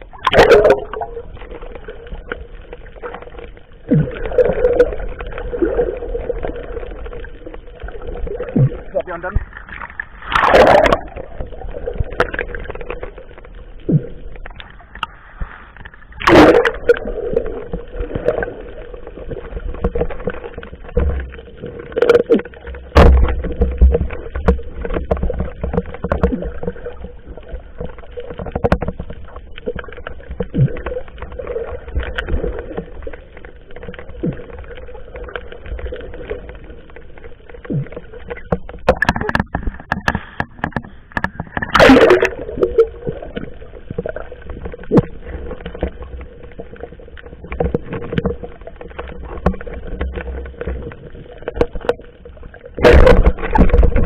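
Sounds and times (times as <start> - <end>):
water splashing around boat: 0.0 - 54.0
loud splashes or knocks: 8.5 - 12.6, 16.2 - 17.0, 22.0 - 26.8, 38.6 - 42.8, 52.8 - 54.0.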